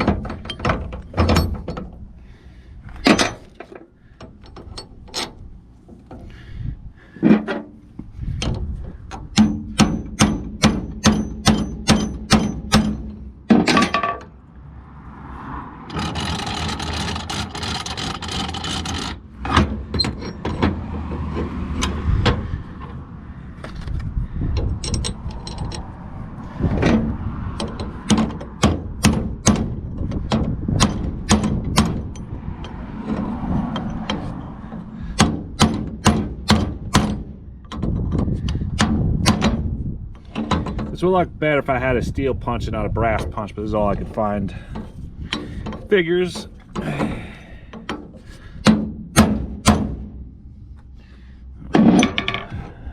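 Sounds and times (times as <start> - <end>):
hammer striking metal punch: 9.3 - 14.2, 48.6 - 50.2.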